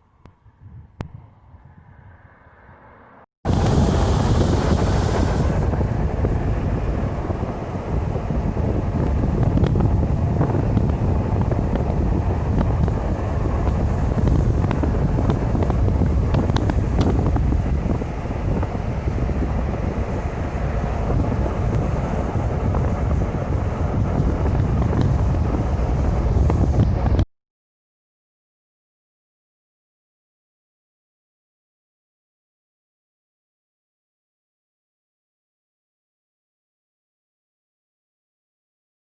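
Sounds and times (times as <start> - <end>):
wind buffeting microphone: 0.0 - 2.9, 3.5 - 27.3.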